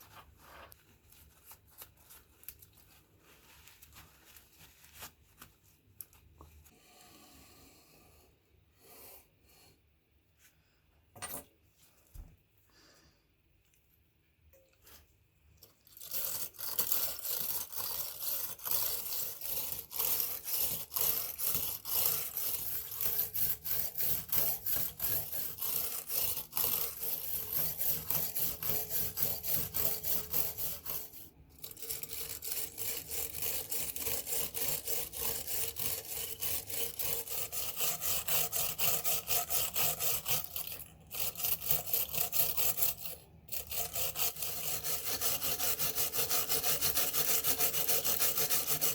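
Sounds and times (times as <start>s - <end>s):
hand tool rasping: 15.9s - 48.9s.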